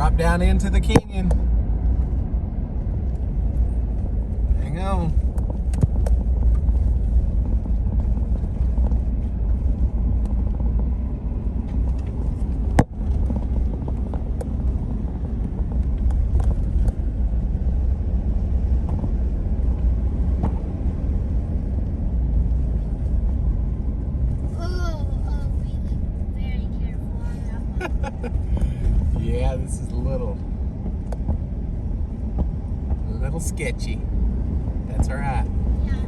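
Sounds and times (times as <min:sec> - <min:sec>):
truck engine and road rumble: 0:00.0 - 0:36.0.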